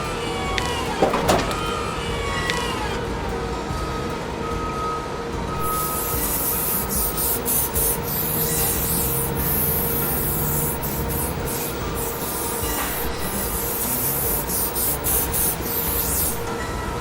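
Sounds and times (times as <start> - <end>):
hissing spray: 5.7 - 16.4.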